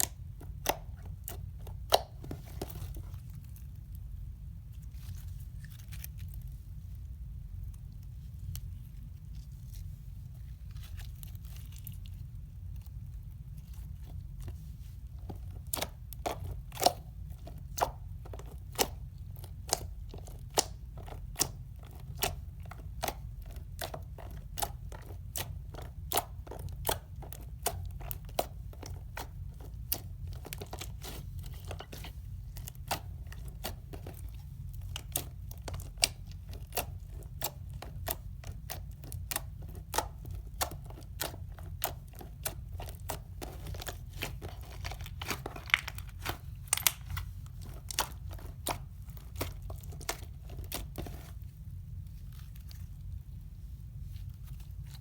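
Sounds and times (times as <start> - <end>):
low steady hum: 0.0 - 55.0
slime squished with crackling pops: 15.2 - 51.4.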